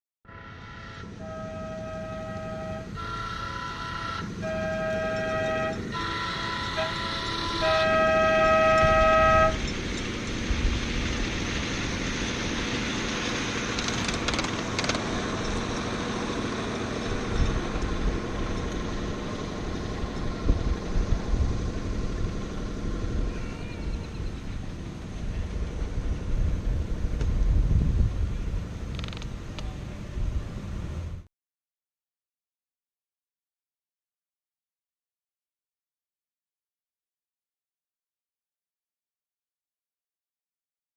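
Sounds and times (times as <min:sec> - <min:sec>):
model train chord horns: 0:00.3 - 0:10.3, 0:22.2 - 0:24.1
trains running rumble: 0:00.3 - 0:31.3.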